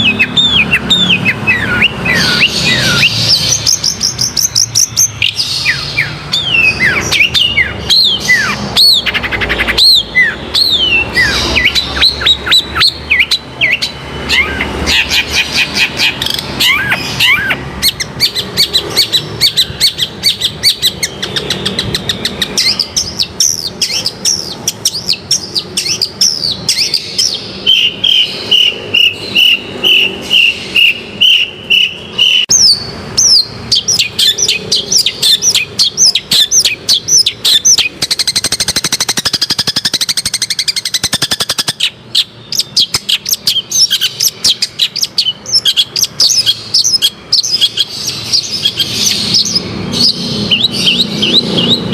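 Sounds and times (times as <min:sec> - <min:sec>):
bird rapid chatter: 0:00.0 - 0:51.9
bird song chirps and whistles: 0:00.0 - 0:51.9.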